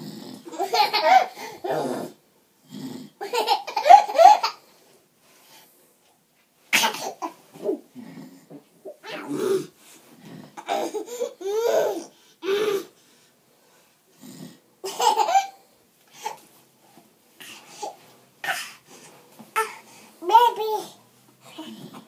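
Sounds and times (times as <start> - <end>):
baby laughing: 0.5 - 1.6, 3.2 - 4.6, 10.6 - 12.1, 14.8 - 15.6
baby coughing: 0.6 - 2.0, 3.2 - 4.6, 6.7 - 7.4, 14.8 - 15.6, 17.4 - 18.8.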